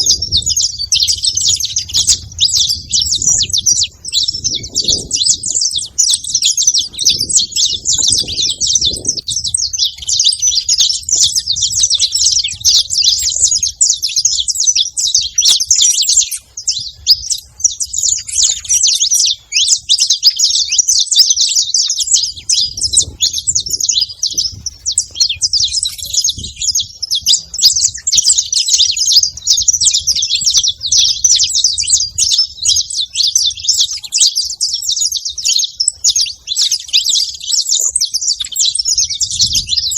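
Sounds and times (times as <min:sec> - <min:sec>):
faint low rumble: 0:00.0 - 0:14.0
finch chirping and singing: 0:00.0 - 0:39.9.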